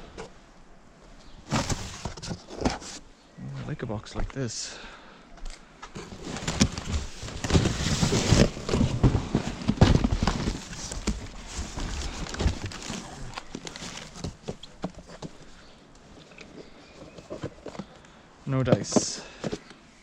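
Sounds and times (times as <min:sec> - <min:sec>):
rummaging through discarded items: 0:01.4 - 0:03.0, 0:06.0 - 0:15.4.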